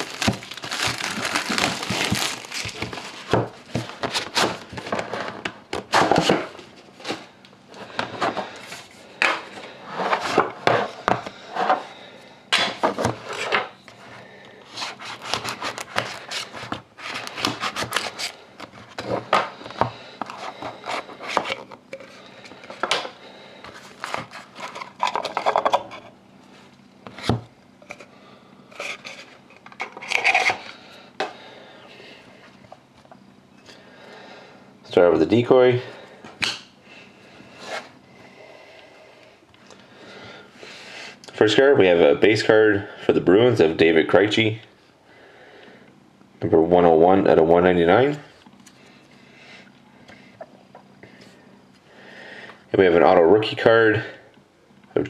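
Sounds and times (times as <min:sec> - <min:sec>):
card packaging crinkling: 0:00.0 - 0:05.0, 0:14.8 - 0:19.1.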